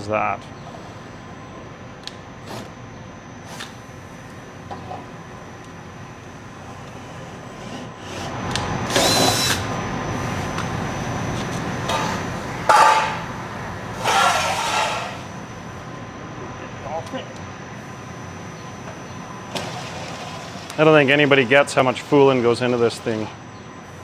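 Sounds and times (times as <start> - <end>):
power drill running: 6.3 - 15.4, 19.4 - 23.5.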